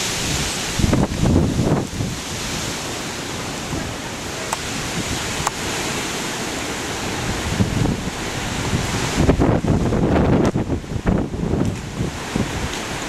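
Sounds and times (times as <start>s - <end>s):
storm surf rushing: 0.0s - 13.0s
wind buffeting microphone: 0.0s - 13.0s.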